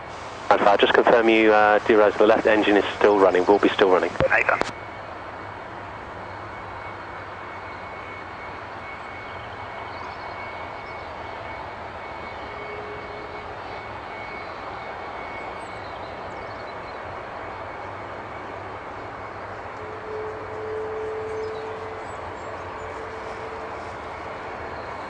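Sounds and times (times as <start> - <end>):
jet engine running: 0.0 - 25.0
thin steady whistle: 6.2 - 16.8, 17.6 - 25.0.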